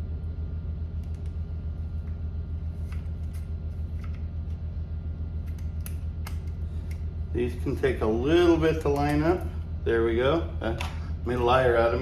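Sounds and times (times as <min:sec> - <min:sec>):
low pulsing hum: 0:00.0 - 0:12.0.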